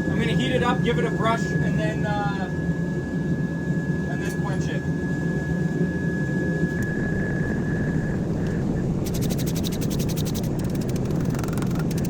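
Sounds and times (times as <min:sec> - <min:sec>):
thin high whine: 0:00.0 - 0:12.0
forge running: 0:06.8 - 0:12.0
fast even scratching: 0:09.0 - 0:12.0.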